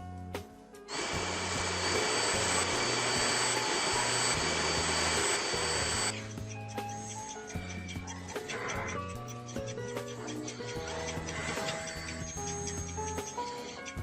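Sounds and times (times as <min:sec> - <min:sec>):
stick vacuum running with whine: 0:00.9 - 0:07.2, 0:10.7 - 0:13.9.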